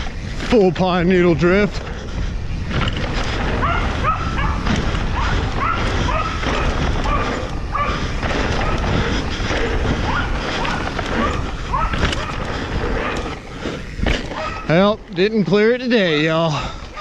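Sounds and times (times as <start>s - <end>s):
mountain bike rumble: 0.0s - 17.0s
wind: 0.0s - 17.0s
dog barking: 3.5s - 8.9s, 10.0s - 13.4s, 14.3s - 14.8s.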